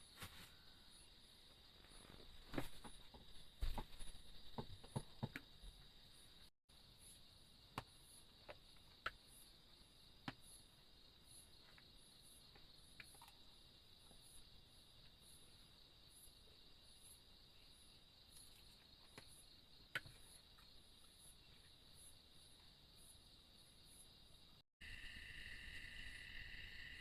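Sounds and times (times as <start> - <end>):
insects chirring: 0.0 - 27.0
small knocks and taps: 2.5 - 5.5
faint chirps: 15.1 - 27.0.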